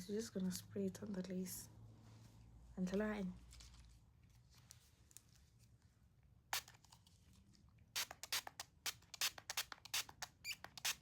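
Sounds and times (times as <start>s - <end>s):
spray can hissing squirts: 8.0s - 11.0s.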